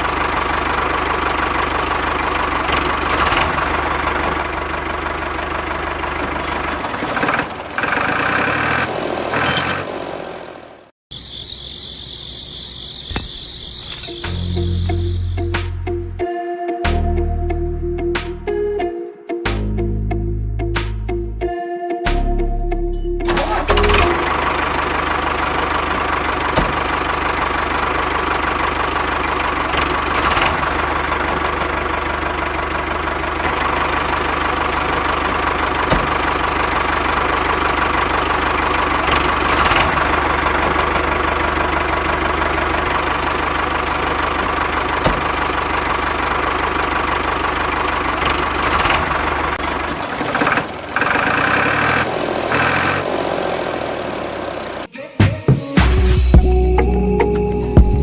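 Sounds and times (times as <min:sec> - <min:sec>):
engine idling with knocking chug: 0:00.0 - 0:08.6, 0:23.4 - 0:54.9.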